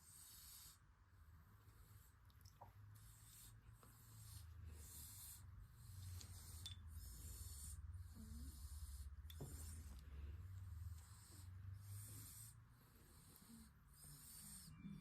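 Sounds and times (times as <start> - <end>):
cat snuffling through congested nose: 3.0 - 15.0.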